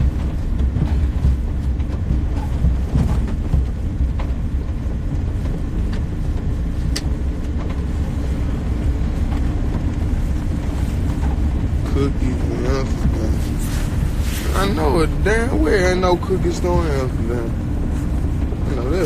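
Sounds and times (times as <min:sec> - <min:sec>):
car rumble inside cabin: 0:00.0 - 0:19.0.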